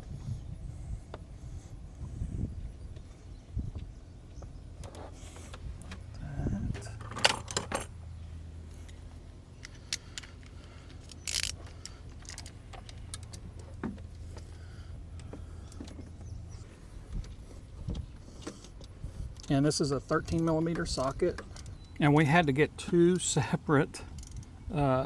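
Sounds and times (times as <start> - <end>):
steady low hum: 0.0 - 25.0
metal tools clinking: 9.6 - 13.4.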